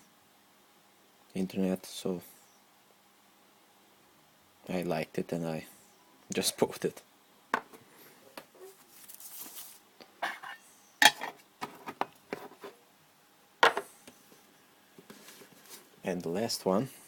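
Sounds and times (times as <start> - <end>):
packaging rustle: 8.7 - 9.8.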